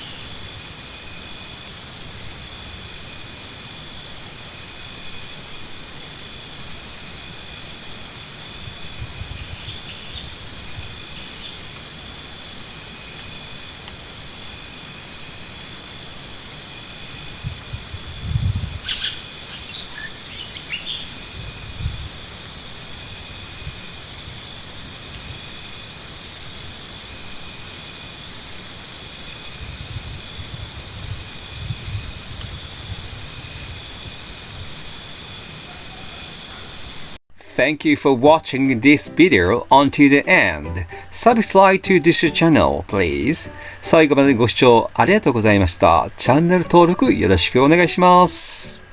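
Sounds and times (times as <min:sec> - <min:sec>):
insect chirping trills: 0:00.0 - 0:37.1.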